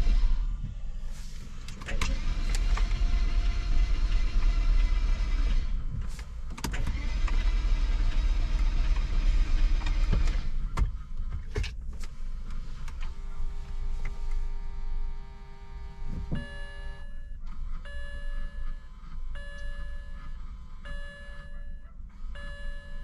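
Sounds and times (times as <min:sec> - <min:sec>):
car starter cranking: 0:00.0 - 0:23.0.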